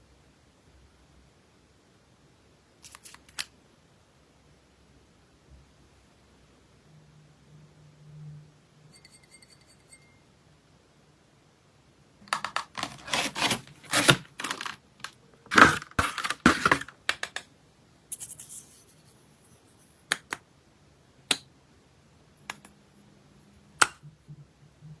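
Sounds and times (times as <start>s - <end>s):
packaging crinkling and scratching: 2.8s - 3.4s, 12.3s - 17.0s.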